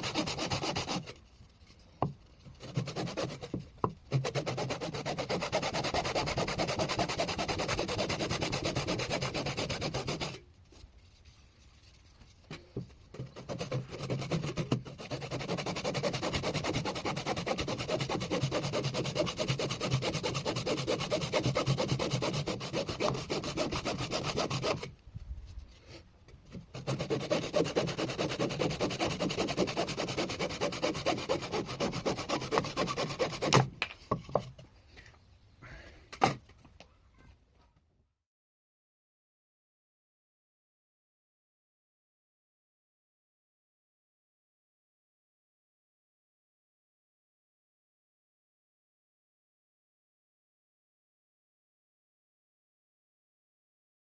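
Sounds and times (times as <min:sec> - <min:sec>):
rasping rub on spinning wood lathe: 0:00.0 - 0:01.1, 0:04.1 - 0:10.4, 0:13.4 - 0:24.9, 0:26.8 - 0:33.6.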